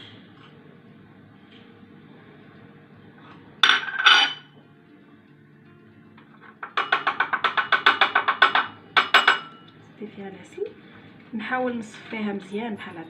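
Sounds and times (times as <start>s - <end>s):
kitchen utensils knocking: 3.6s - 4.5s, 6.4s - 9.6s.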